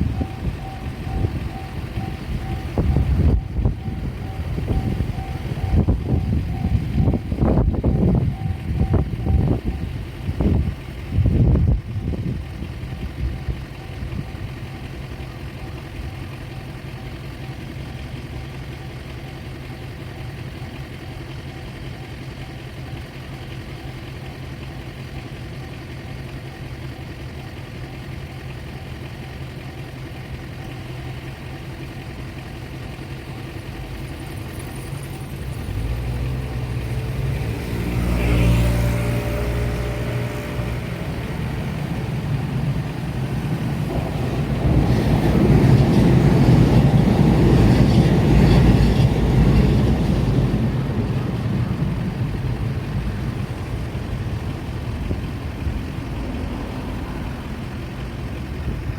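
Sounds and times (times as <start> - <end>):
low engine hum: 0.0 - 58.9
motor vehicle passing: 34.7 - 58.9.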